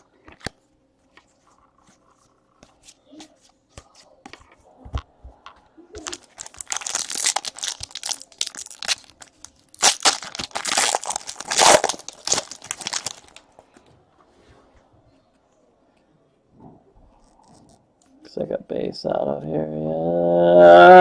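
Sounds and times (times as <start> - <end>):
wrapper tearing and crinkling: 6.0 - 13.4.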